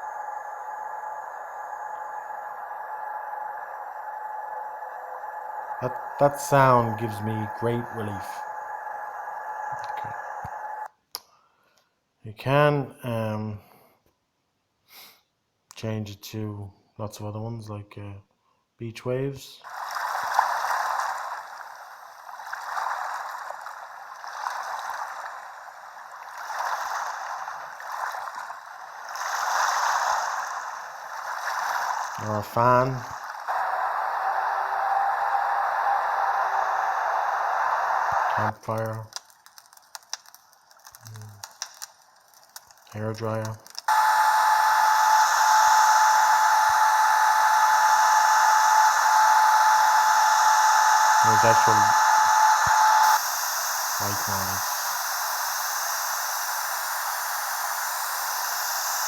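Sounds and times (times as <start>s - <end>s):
recorded surf through phone speaker: 4.5s - 10.8s, 32.2s - 39.2s, 42.9s - 43.6s, 51.1s - 53.2s, 54.0s - 54.7s
recorded hair dryer: 9.7s - 10.2s, 32.2s - 38.5s, 43.9s - 59.0s.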